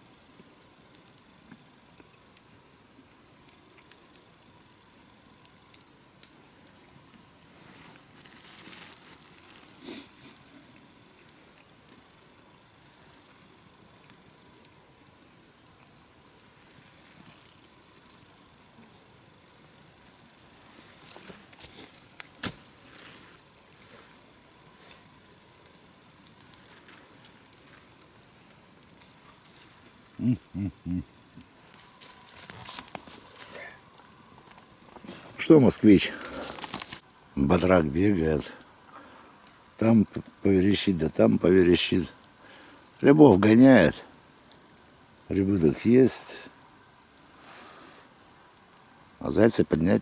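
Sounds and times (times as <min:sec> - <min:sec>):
rustling: 0:06.2 - 0:12.1, 0:19.3 - 0:37.8.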